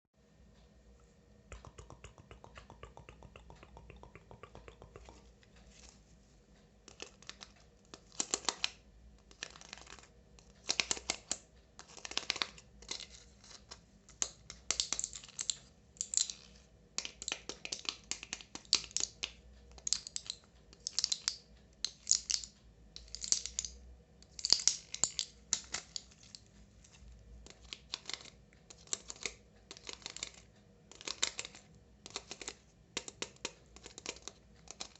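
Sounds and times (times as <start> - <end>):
nails tapping on squishy toy: 1.5 - 5.6, 14.1 - 26.5, 27.3 - 34.9.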